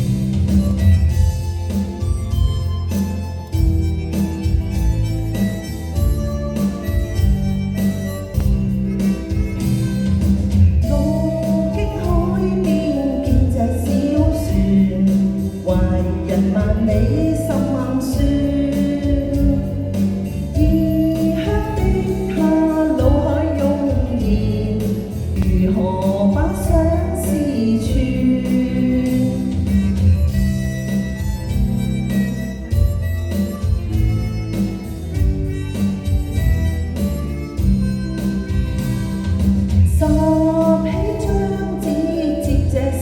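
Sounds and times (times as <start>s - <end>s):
slow pop ballad music: 0.0s - 43.0s.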